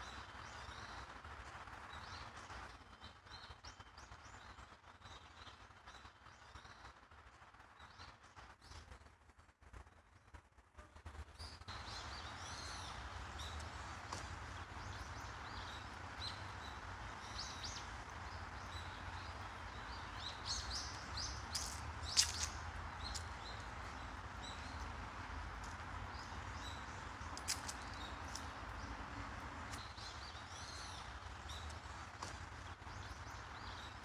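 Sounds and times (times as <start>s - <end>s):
outdoor background noise: 0.0s - 34.0s
small birds chirping: 11.7s - 34.0s.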